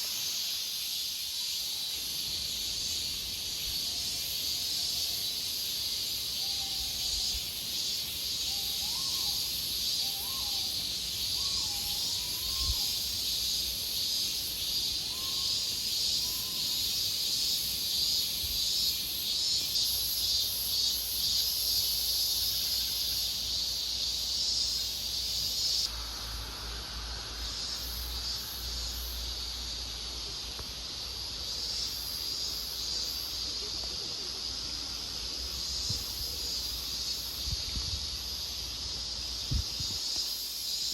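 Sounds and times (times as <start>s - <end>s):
insects droning: 0.0s - 40.9s.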